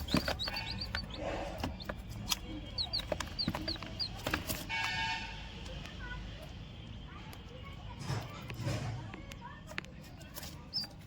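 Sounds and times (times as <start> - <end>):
chick peeping: 0.0 - 4.7, 10.4 - 11.0.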